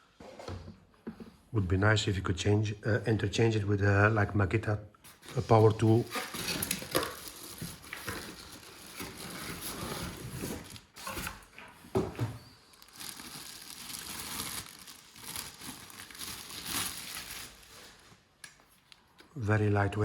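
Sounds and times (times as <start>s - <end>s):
packaging crinkling and rustling: 5.1s - 19.0s.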